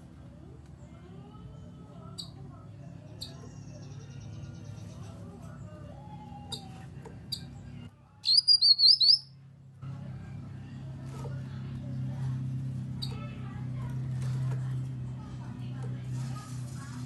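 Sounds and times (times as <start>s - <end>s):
birdsong chirps and trills: 3.1s - 5.2s, 6.2s - 9.3s
bird whistled notes: 8.3s - 9.3s.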